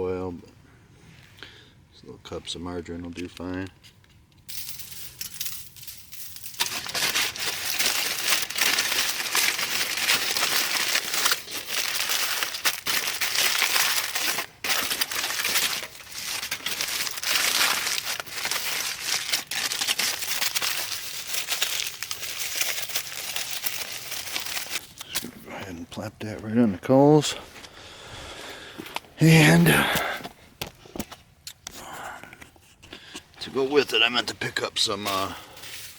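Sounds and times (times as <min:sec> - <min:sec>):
wrapping crinkling: 0:04.5 - 0:25.4, 0:33.4 - 0:35.9.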